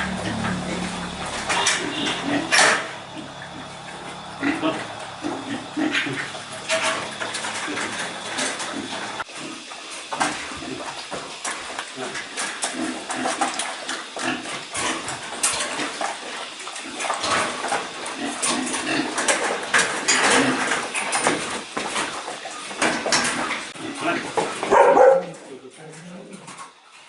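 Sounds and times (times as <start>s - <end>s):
farm animals calling: 0.0s - 9.2s.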